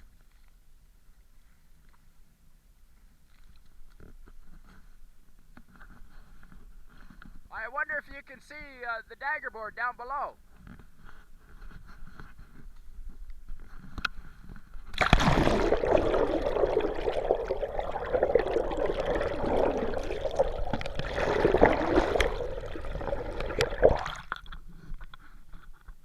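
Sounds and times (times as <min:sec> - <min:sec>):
water rushing underwater: 0:14.9 - 0:24.6.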